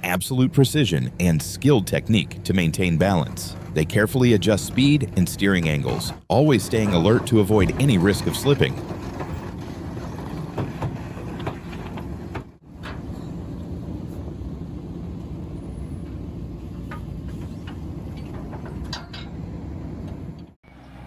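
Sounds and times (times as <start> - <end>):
diesel engine of heavy machinery: 0.0 - 21.0
metal clanks and knocks: 2.7 - 13.7, 16.0 - 20.6.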